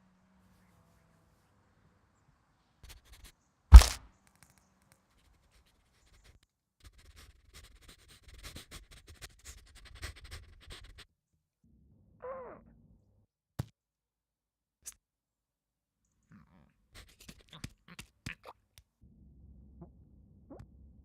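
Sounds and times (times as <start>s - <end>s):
heavy thud: 3.7s - 4.0s
small scrapes and clicks: 17.0s - 18.9s.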